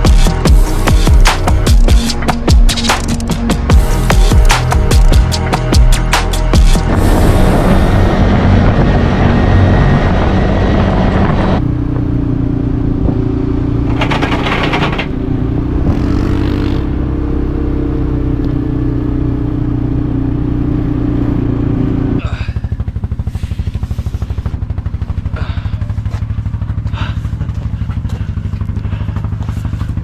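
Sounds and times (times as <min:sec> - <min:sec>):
rough noisy sound: 0:00.0 - 0:11.6, 0:13.8 - 0:16.9
quad bike engine running: 0:00.0 - 0:30.0.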